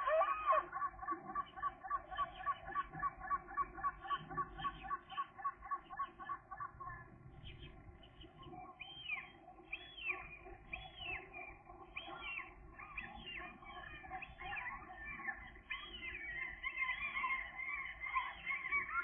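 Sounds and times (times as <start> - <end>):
gull calling: 0.0 - 6.7.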